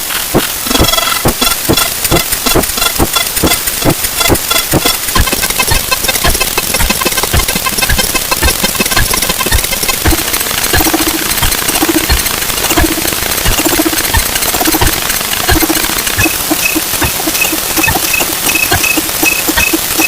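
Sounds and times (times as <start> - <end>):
sped-up clattering knocks: 0.1 - 20.0.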